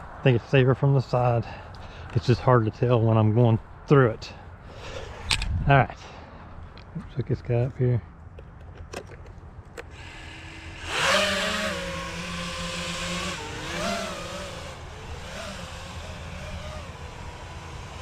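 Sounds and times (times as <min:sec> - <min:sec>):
drone motors buzzing whine: 0:09.8 - 0:18.0.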